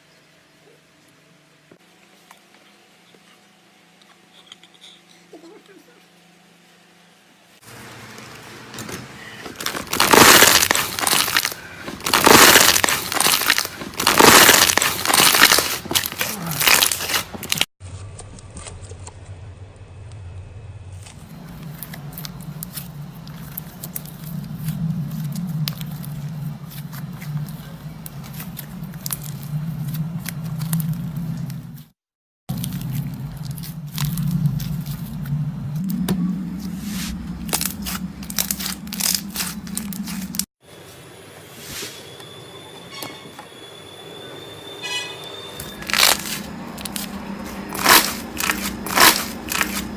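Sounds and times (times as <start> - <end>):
steady low hum: 0.0 - 49.9
slime crackling and squishing: 9.6 - 19.3, 21.0 - 31.9, 32.5 - 40.5, 45.8 - 49.9.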